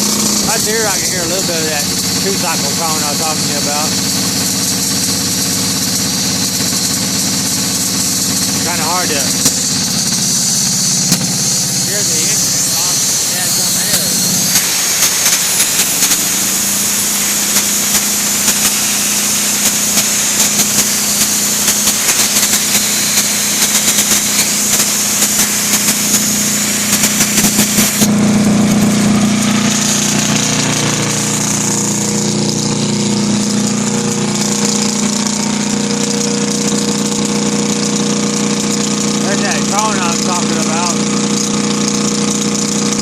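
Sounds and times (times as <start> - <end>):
diesel engine running: 0.0 - 43.0
high hiss: 9.0 - 28.1.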